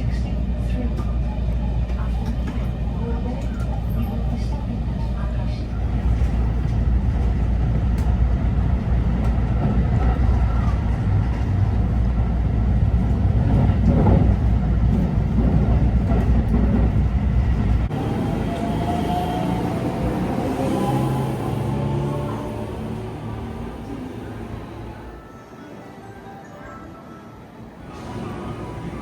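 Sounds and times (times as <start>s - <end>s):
train rumbling: 0.0s - 25.9s, 27.4s - 29.0s.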